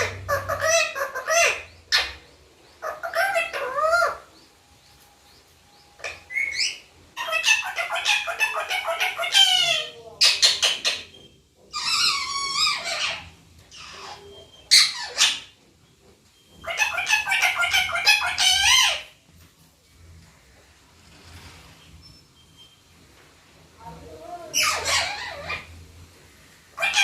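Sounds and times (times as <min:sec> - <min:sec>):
parakeet squawking and chattering: 0:00.0 - 0:04.3, 0:06.0 - 0:15.6, 0:16.5 - 0:19.2, 0:23.9 - 0:25.9, 0:26.7 - 0:27.0.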